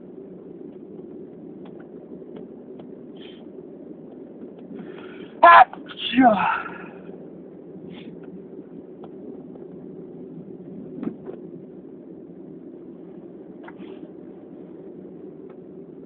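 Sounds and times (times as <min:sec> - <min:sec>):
low background hum: 0:00.0 - 0:16.0
faint breaths: 0:04.7 - 0:05.4.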